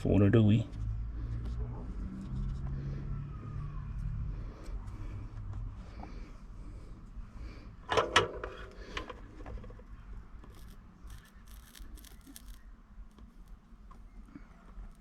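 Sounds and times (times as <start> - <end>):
faint scratching and rustling: 9.2 - 15.0
small tools clicking: 10.4 - 13.6.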